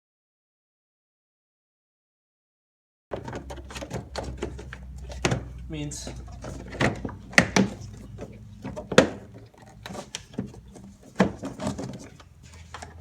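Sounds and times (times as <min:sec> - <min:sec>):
irregular knocks and clunks: 0:03.1 - 0:13.0.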